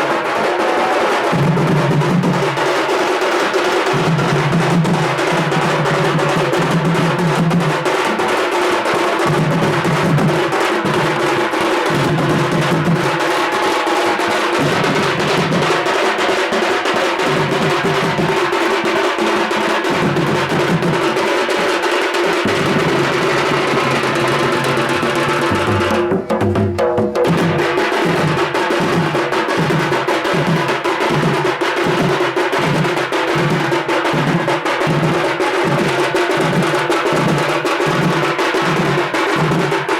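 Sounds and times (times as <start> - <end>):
drum-heavy music: 0.0 - 39.9.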